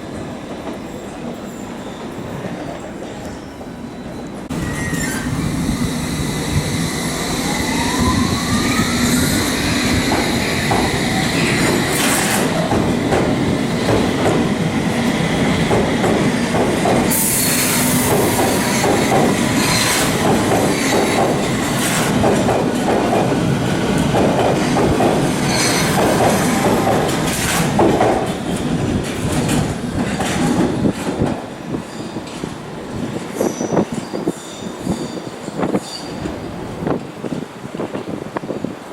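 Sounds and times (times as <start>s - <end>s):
wheels squealing: 4.5s - 5.7s
rising whine: 4.5s - 10.5s
train wheels clicking over joints: 8.8s - 31.5s.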